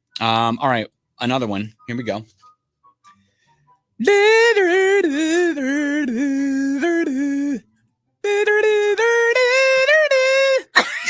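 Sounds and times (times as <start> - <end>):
man singing with tongue flapping: 4.0 - 7.6, 8.2 - 10.7.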